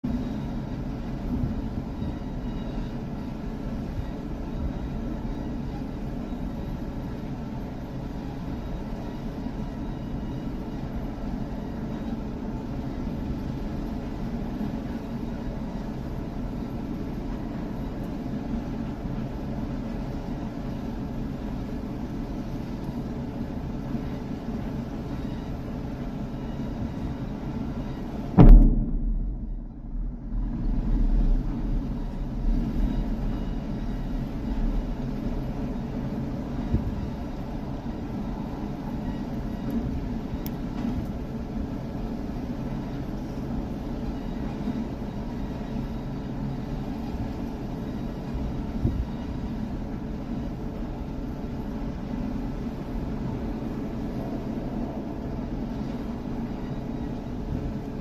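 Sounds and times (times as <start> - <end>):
low outdoor rumble: 0.0 - 58.0
explosive blast: 28.4 - 31.8.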